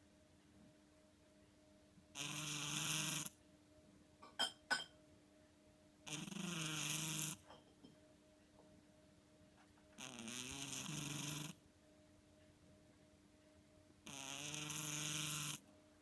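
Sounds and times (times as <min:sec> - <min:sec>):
cat snoring: 0:02.1 - 0:03.4, 0:06.0 - 0:07.4, 0:10.0 - 0:11.6, 0:14.0 - 0:15.7.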